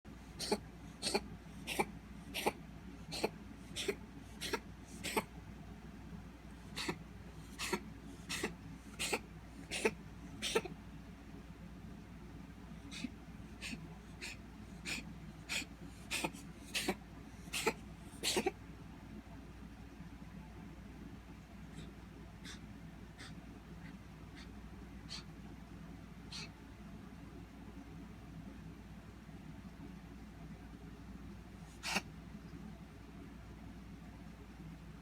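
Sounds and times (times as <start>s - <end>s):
cat making cough-like noises: 0.3s - 5.4s, 6.7s - 10.8s, 12.9s - 18.6s, 31.7s - 32.1s.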